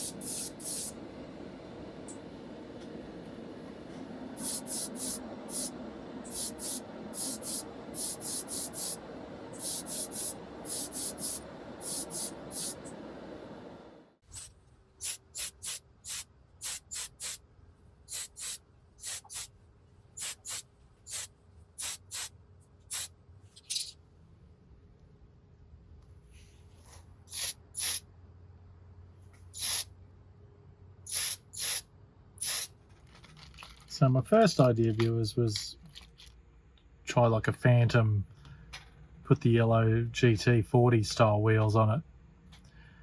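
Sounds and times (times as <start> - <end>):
spray paint hissing bursts: 0.0 - 1.0, 4.4 - 12.9, 14.2 - 17.4, 18.1 - 19.5, 20.2 - 22.3, 22.9 - 23.1, 27.3 - 28.0, 29.6 - 29.9, 31.1 - 32.7
steady background noise: 0.0 - 26.0.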